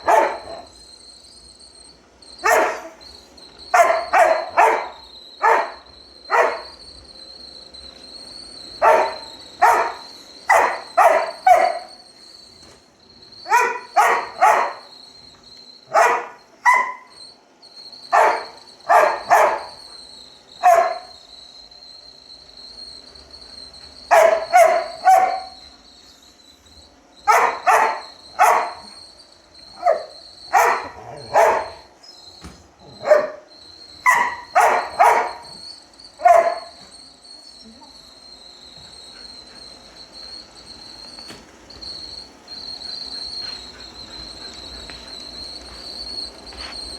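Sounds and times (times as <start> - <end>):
dog barking: 0.0 - 0.7, 2.4 - 3.0, 3.7 - 6.8, 8.8 - 12.0, 13.4 - 14.9, 15.9 - 17.1, 18.1 - 19.8, 20.6 - 21.2, 24.1 - 25.6, 27.2 - 29.0, 29.7 - 31.9, 32.8 - 35.6, 36.2 - 36.9
robot vacuum whine: 0.0 - 46.9.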